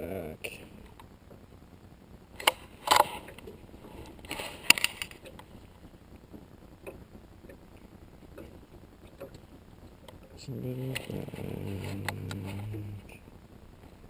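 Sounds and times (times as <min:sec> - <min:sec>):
fishing gear clicks and scrapes: 0:04.0 - 0:05.3.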